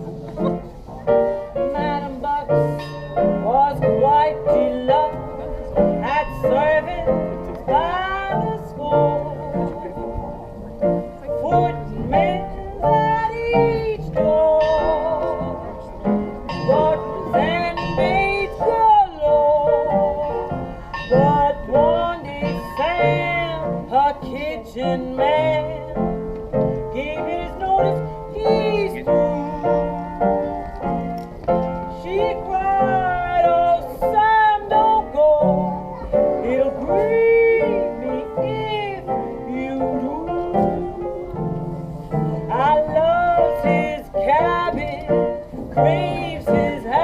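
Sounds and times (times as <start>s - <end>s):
piano: 0.0s - 47.0s
woman singing blues: 1.6s - 10.2s, 11.3s - 16.0s, 16.6s - 47.0s.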